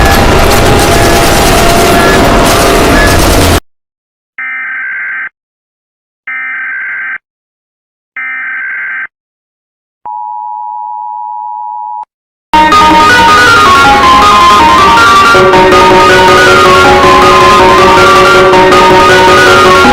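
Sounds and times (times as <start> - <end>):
loud sound: 0.0 - 3.6, 12.6 - 19.9.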